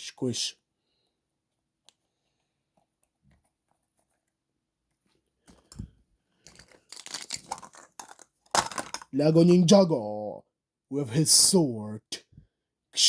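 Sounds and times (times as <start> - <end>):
wrapper crinkling and crackling: 6.5 - 9.1.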